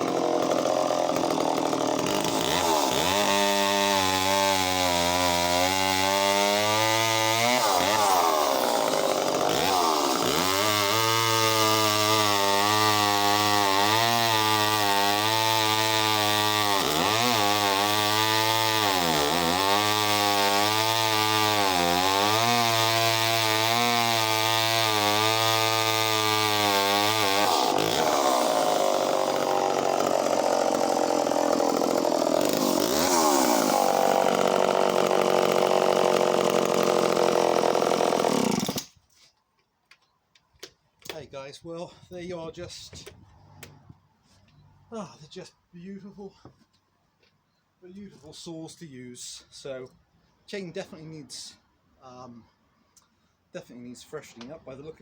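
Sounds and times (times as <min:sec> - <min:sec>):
chainsaw cutting wood: 0:00.0 - 0:39.3.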